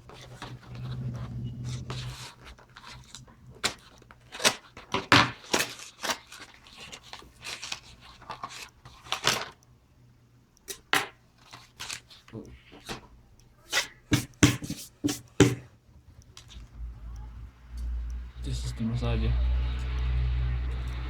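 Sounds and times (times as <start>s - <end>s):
packaging rustling and tearing: 1.9s - 9.6s.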